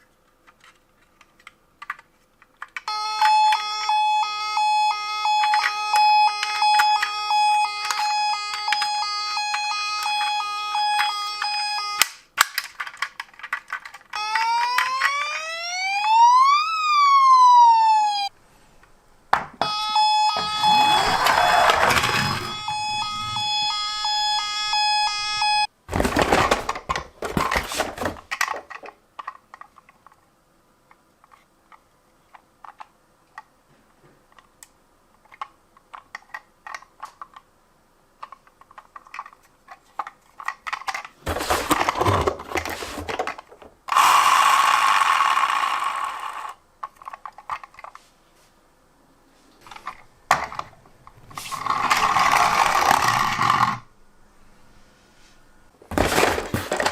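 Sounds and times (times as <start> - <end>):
plastic toys clicking and rattling: 0.0 - 3.6, 5.4 - 15.3, 25.9 - 30.3, 30.9 - 33.5, 34.3 - 37.5, 38.2 - 48.0, 49.6 - 53.8, 55.9 - 56.9
toy electronic siren beeping: 2.9 - 12.2, 14.1 - 18.3, 19.6 - 25.7, 44.0 - 46.5, 51.8 - 53.8
plastic toy vehicles scraping: 20.4 - 23.5, 41.2 - 46.5, 51.2 - 53.9.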